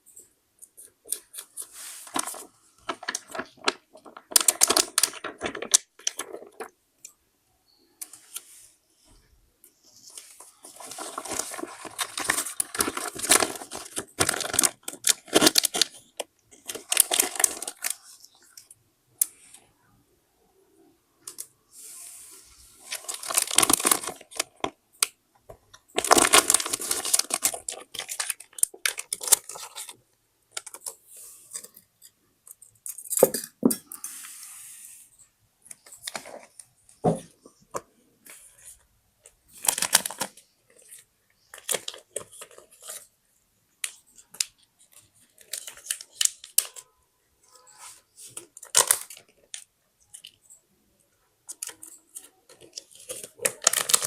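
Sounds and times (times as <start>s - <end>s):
paper rustling: 0.8s - 6.7s, 9.9s - 18.2s, 22.1s - 24.5s, 26.0s - 30.0s, 39.6s - 43.1s, 51.5s - 54.0s.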